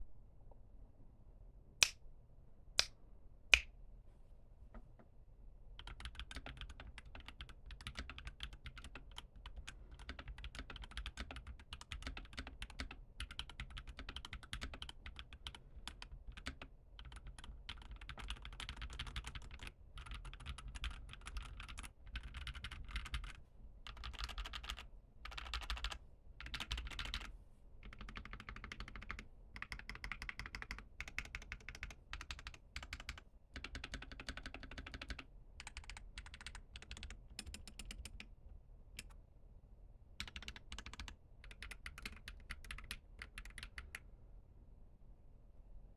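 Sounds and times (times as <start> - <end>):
mechanical keyboard typing: 5.8 - 38.3, 40.2 - 44.0.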